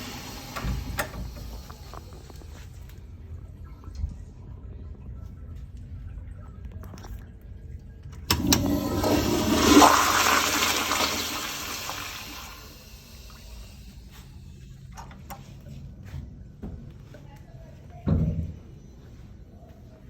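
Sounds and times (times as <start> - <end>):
toilet flushing water rush: 0.0 - 2.6, 8.3 - 14.2
toilet flush handle click: 0.2 - 1.8, 8.3 - 10.1.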